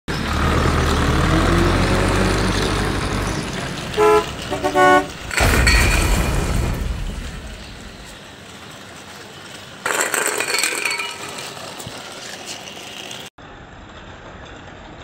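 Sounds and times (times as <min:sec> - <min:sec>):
vehicle engine rumbling: 0:00.1 - 0:15.0
car horn honking: 0:03.9 - 0:05.5.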